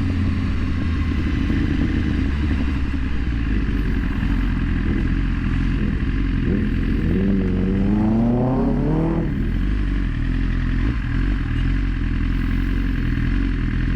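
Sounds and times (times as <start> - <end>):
vehicle engine droning: 0.0 - 13.9
rising engine note: 6.4 - 9.7.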